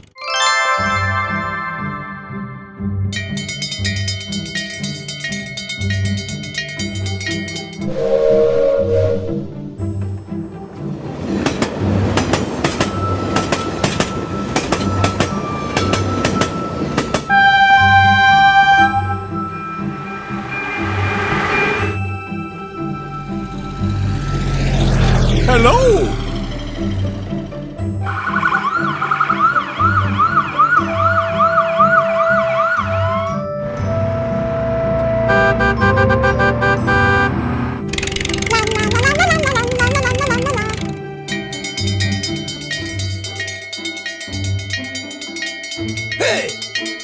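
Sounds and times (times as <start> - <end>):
background music: 0.0 - 47.0
train wheels clickety-clack: 10.7 - 17.8
emergency vehicle siren wailing: 12.9 - 41.4
train horn sounding: 17.0 - 24.7, 28.0 - 32.9, 34.1 - 37.8, 38.5 - 41.0.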